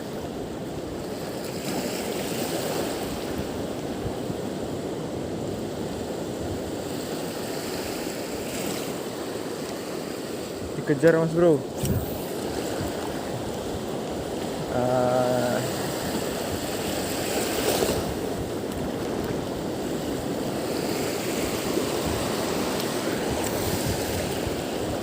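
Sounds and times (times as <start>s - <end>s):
rushing water: 0.0s - 25.0s
wind: 0.0s - 25.0s
brief swish: 11.8s - 12.3s.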